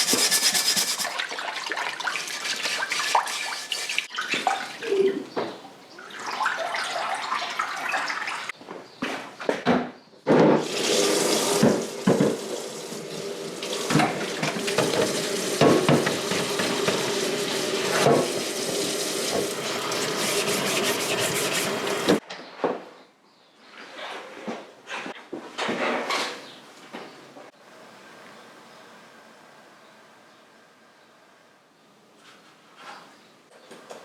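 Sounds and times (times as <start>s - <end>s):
tap water running into sink: 10.6s - 22.2s.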